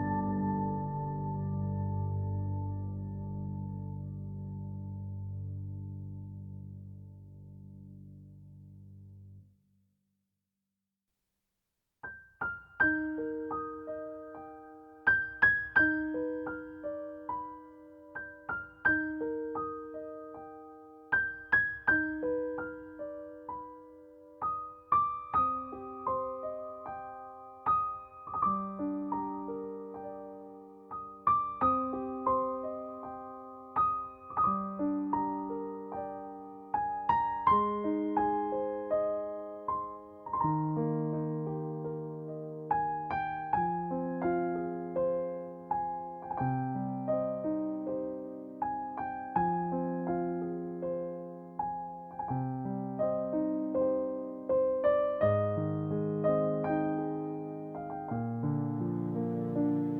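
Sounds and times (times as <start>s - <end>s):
slow gentle piano melody: 0.0s - 9.5s, 12.0s - 59.9s.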